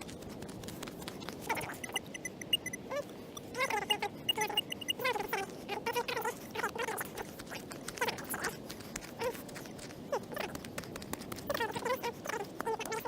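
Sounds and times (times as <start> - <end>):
digging in soil: 0.0 - 2.1, 4.3 - 13.0
metal detector beeps: 1.5 - 2.9, 3.8 - 5.2.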